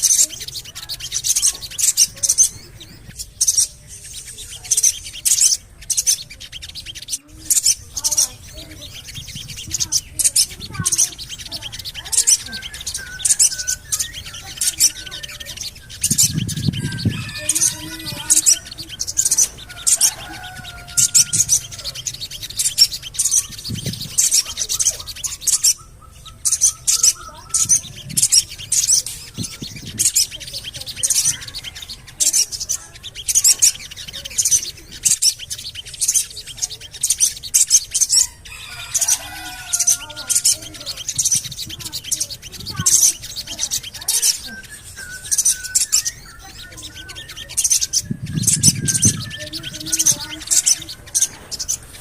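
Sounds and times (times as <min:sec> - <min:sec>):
bird chirping rapidly: 0:00.0 - 0:52.0.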